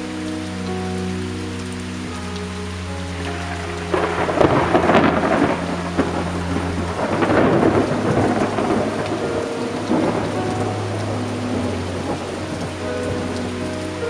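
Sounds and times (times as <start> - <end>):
steady rain: 0.0 - 14.0
thunder rolling: 3.2 - 14.0.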